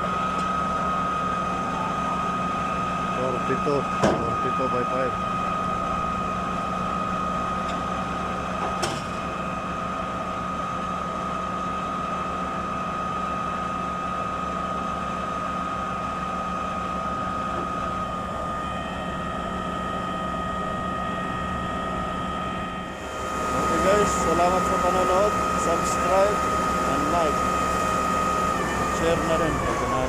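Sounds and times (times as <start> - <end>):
concrete pump truck running: 0.0 - 30.0
high-pitched whine: 16.6 - 30.0.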